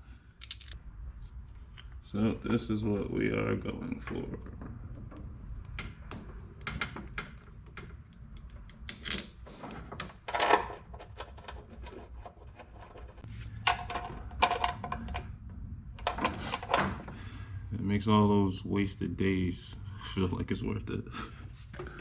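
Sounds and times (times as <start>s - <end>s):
metal parts and tools clicking: 0.4s - 0.8s, 8.1s - 9.4s.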